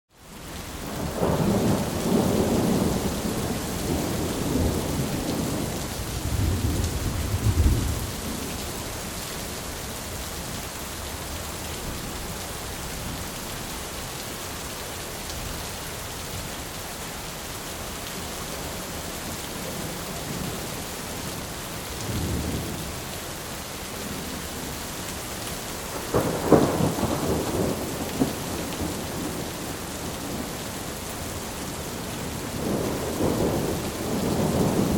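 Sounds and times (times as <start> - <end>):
heavy steady rain: 0.1 - 34.9
thunder rumbling and cracking: 0.9 - 8.6, 22.0 - 22.8, 25.9 - 30.8, 32.0 - 34.9.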